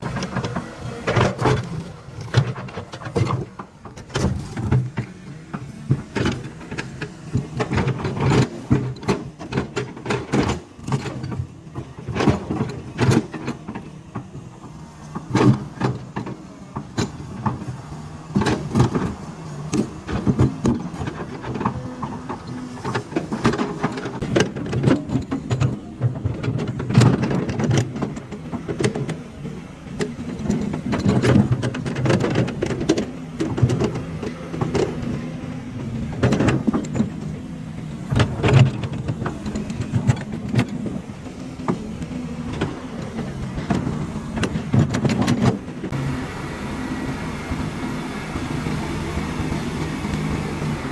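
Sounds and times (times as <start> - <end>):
excavator diesel engine running: 0.0 - 50.9
knocks and clatter: 30.0 - 46.0.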